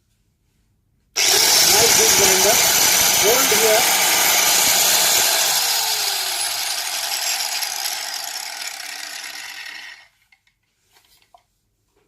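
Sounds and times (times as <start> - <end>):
angle grinder spinning down: 1.2 - 10.2.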